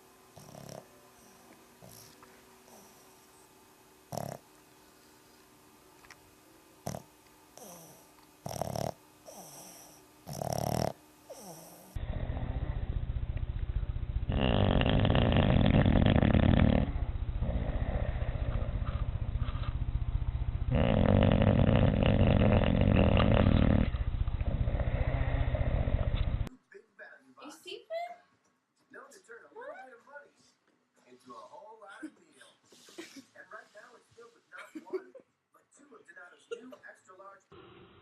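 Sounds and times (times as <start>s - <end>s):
dog snoring: 0.3s - 3.4s, 4.1s - 5.1s, 6.8s - 26.5s.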